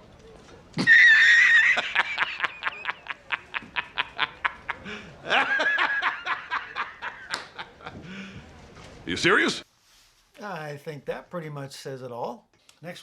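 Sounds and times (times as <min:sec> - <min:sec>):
high-pitched cackling laugh: 0:00.8 - 0:08.0.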